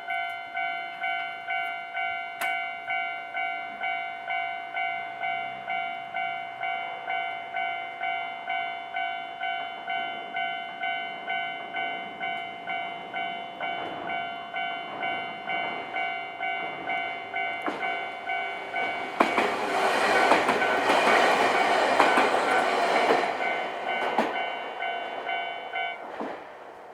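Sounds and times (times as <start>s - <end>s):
level crossing warning bell: 0.0s - 26.1s
train wheels clacking over rails: 13.6s - 26.9s.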